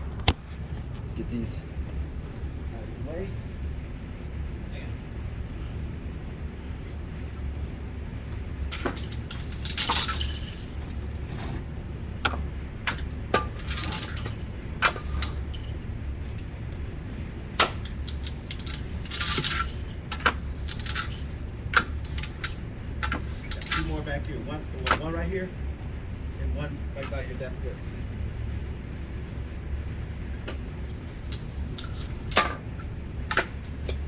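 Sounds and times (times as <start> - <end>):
ventilation hum: 0.0 - 34.0
brass cartridge cases clinking: 8.3 - 11.4, 12.3 - 15.8, 17.6 - 24.3, 30.5 - 34.0.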